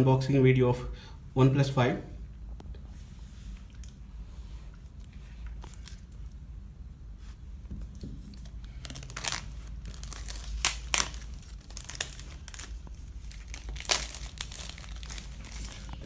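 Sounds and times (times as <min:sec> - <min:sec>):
packaging crinkling and tearing: 0:05.4 - 0:06.2, 0:08.3 - 0:16.0.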